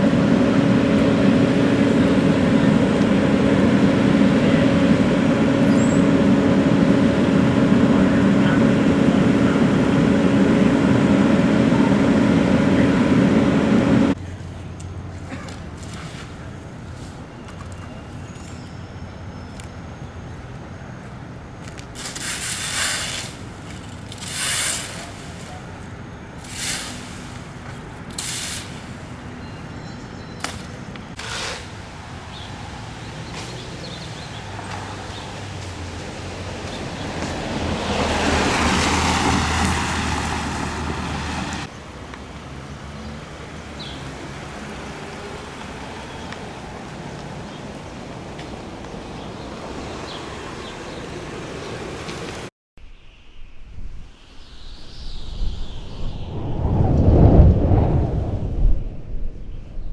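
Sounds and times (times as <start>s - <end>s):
vehicle going by with low rumble: 0.0s - 52.5s, 55.4s - 59.9s
short hissing bursts: 22.0s - 25.8s, 26.4s - 29.2s.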